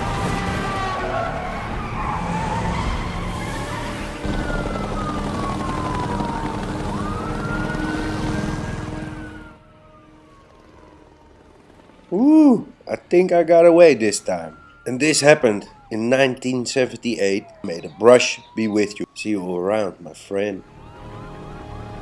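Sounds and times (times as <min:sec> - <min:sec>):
engine and tyre noise: 0:00.0 - 0:22.0
police siren wailing: 0:00.0 - 0:22.0.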